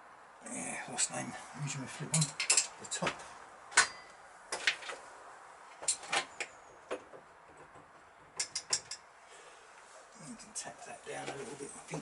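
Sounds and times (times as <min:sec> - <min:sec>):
metal tools clinking: 0:02.1 - 0:02.8.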